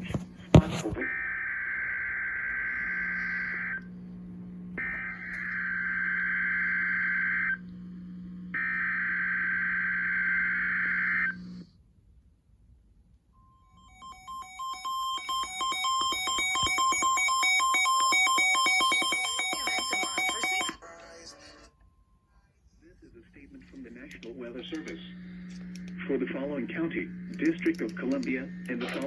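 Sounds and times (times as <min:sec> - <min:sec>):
warbling data tones: 0:13.8 - 0:20.8
electronic keyboard music: 0:13.9 - 0:20.8
low hum: 0:23.0 - 0:29.0.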